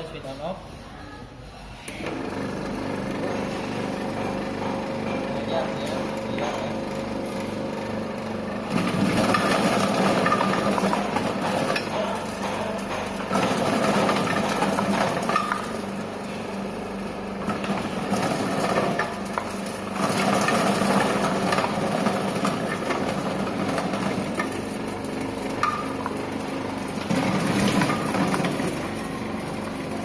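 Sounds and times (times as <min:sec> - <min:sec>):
machine motor hum: 0:01.9 - 0:30.0
garlic cloves rattling: 0:08.7 - 0:30.0.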